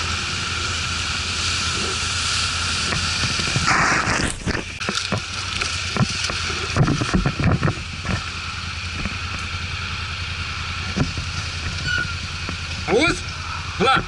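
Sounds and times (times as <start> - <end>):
atv engine running: 0.0 - 14.0
knocks and thumps over rough ground: 2.8 - 9.6, 10.8 - 13.4.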